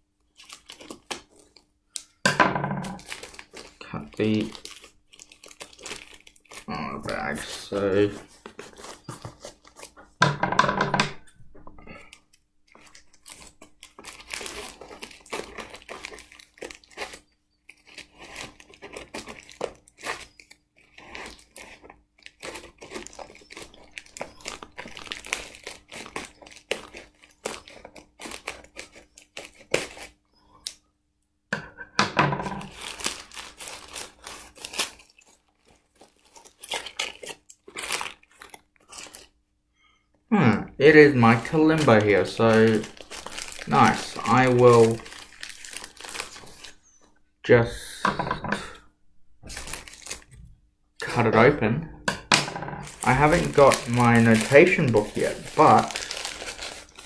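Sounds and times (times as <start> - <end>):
packaging bag crinkling and tearing: 0.3 - 2.1, 2.9 - 10.1, 12.0 - 30.2, 32.5 - 39.4, 40.9 - 46.8, 49.4 - 50.4, 52.8 - 57.0.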